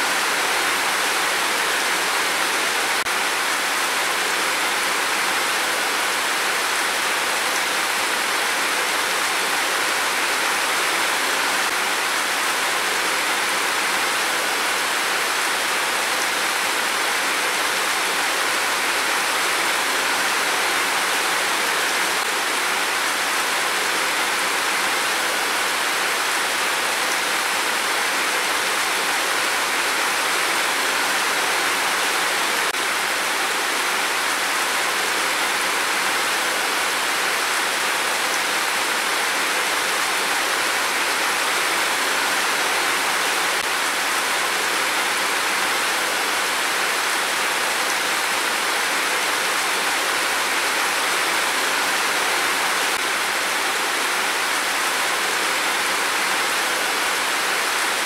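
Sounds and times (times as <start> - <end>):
heavy rain downpour: 0.0 - 58.0.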